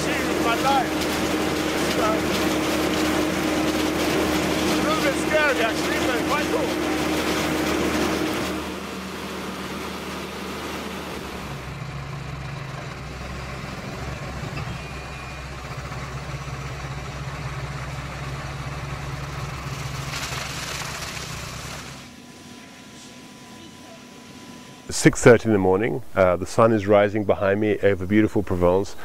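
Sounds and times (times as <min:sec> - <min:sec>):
broad rushing noise: 0:00.0 - 0:11.7
harvester engine humming: 0:00.0 - 0:29.0.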